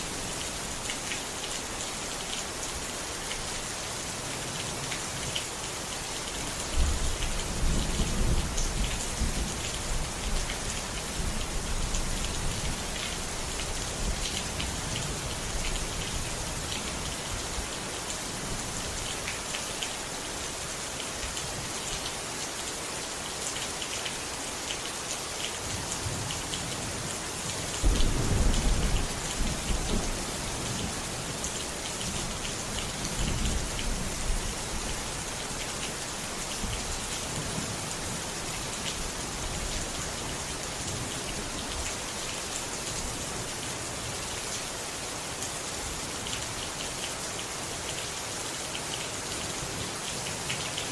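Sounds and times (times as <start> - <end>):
steady rain: 0.0 - 50.9
thunder rolling: 27.8 - 30.0.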